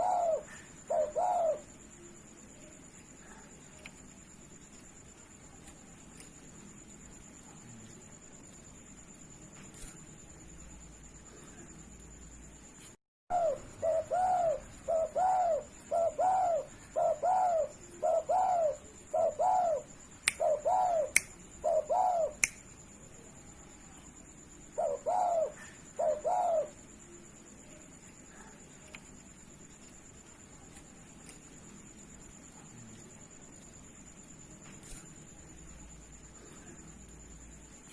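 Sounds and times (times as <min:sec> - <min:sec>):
dove cooing: 0:00.0 - 0:01.8, 0:13.3 - 0:22.4, 0:24.8 - 0:26.8
sharp clicks: 0:20.2 - 0:20.4, 0:22.4 - 0:22.6.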